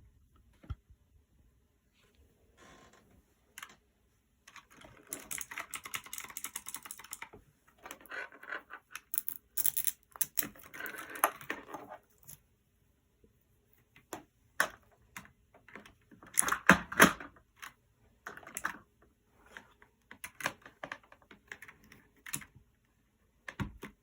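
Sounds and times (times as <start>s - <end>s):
clicky mechanical keyboard typing: 4.5s - 7.3s.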